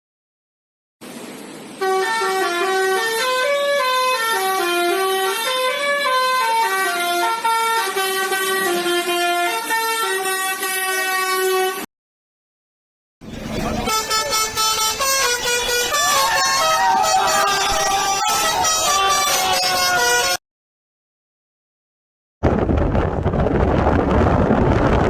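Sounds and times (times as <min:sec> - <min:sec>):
musical bus horn: 0:01.8 - 0:11.9, 0:13.6 - 0:20.4.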